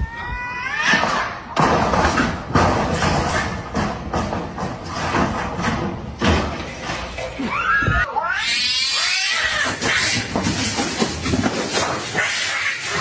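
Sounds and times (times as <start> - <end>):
cat caterwauling: 0.0 - 1.4, 7.4 - 10.3.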